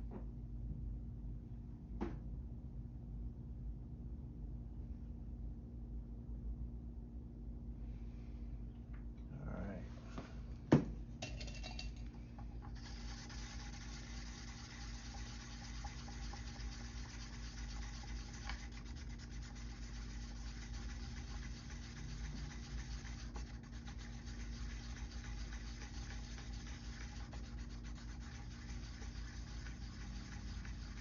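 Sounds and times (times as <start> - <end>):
low hum: 10.4 - 31.0
resin stirred in a cup: 11.2 - 31.0.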